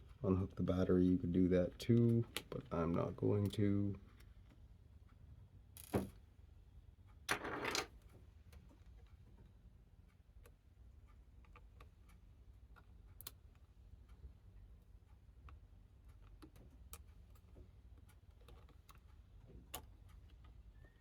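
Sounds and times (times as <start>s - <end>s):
small clicks and taps: 8.4s - 21.0s.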